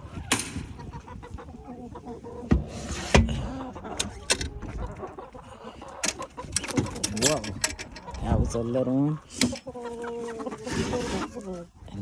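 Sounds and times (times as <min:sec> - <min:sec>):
chickens clucking: 0:00.0 - 0:12.0
door scraping slide: 0:02.6 - 0:03.4, 0:10.5 - 0:11.6.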